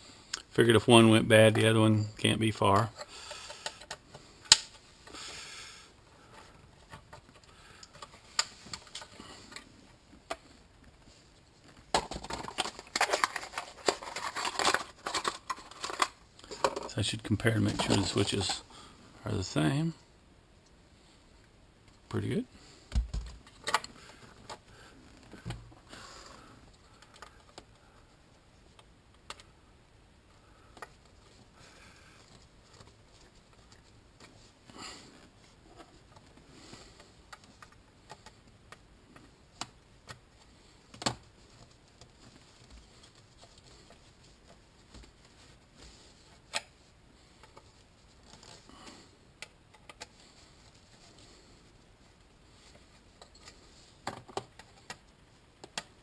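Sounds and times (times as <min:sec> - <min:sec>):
plastic parts clicking and tapping: 0:03.0 - 0:05.2, 0:11.7 - 0:16.9, 0:22.9 - 0:24.6, 0:26.7 - 0:27.8, 0:52.7 - 0:56.0.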